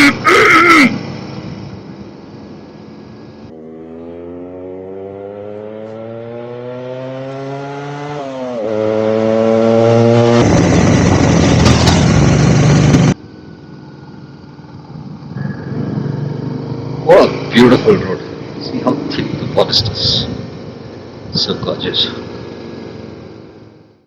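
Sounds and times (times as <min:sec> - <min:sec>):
motorcycle engine accelerating: 0:00.0 - 0:24.0
loud rushing noise: 0:09.1 - 0:13.3.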